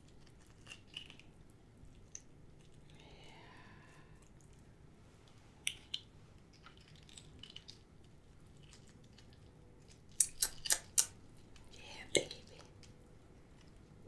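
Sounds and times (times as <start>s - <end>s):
small crackles: 0.0s - 14.0s
shellfish shell cracking: 0.1s - 1.4s, 5.6s - 11.7s.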